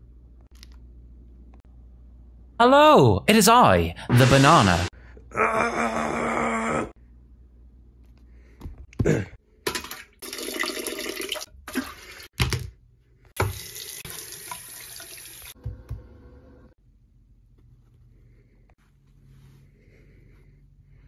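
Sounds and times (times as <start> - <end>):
water running in bursts: 13.4 - 15.6.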